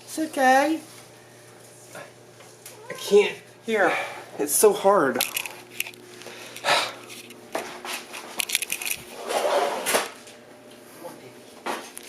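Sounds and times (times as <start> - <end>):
rustling scrape: 6.5 - 10.1.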